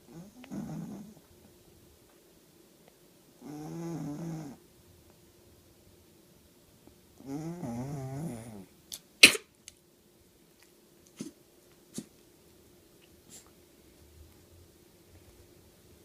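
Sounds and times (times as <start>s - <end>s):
dog sneezing: 9.2s - 9.5s, 11.1s - 12.2s.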